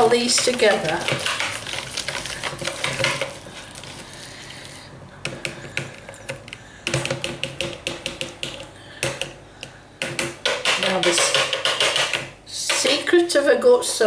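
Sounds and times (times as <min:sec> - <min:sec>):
whisk clicking against jug: 0:00.3 - 0:03.4.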